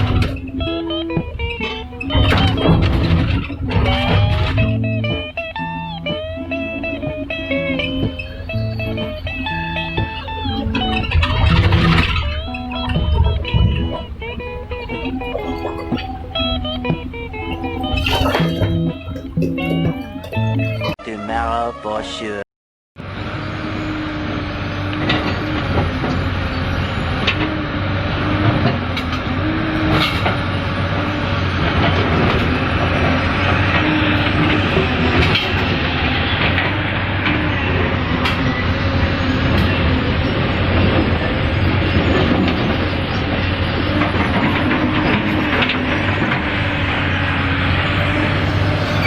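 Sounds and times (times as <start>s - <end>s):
excavator diesel engine running: 0.0s - 21.0s, 23.0s - 49.0s
sharp metal knocks and clanks: 10.0s - 21.0s.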